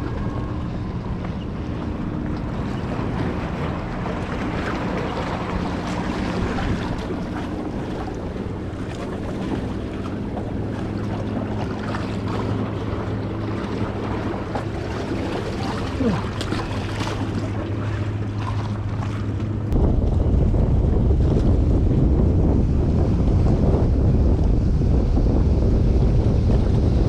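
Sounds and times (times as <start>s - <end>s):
boat engine droning: 0.0s - 27.0s
wind buffeting microphone: 0.0s - 27.0s
waves washing against rock: 2.1s - 19.8s.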